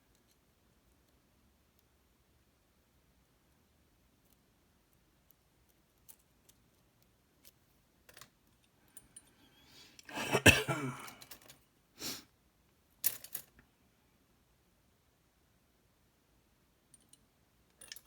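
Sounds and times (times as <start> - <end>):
lock picks clicking and scraping: 17.0 - 18.0.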